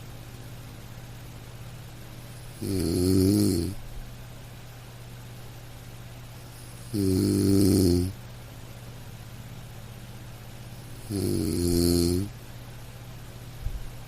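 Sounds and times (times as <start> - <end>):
low steady hum: 0.0 - 14.0
loud snoring: 2.5 - 3.8, 6.6 - 8.2, 10.9 - 12.3.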